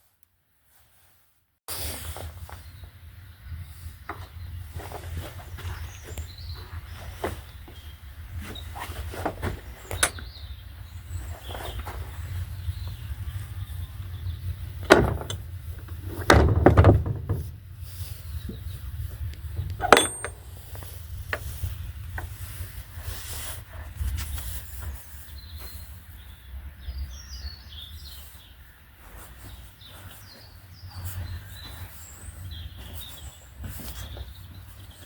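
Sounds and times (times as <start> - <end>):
small birds chirping: 2.5 - 16.2, 17.6 - 23.8, 24.8 - 35.0
steady low rumble: 10.1 - 27.1.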